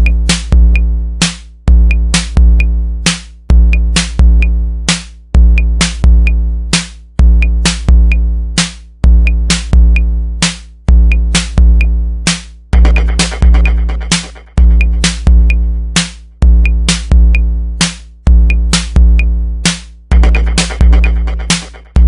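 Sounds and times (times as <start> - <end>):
electronic music with drum machine: 0.0 - 22.0.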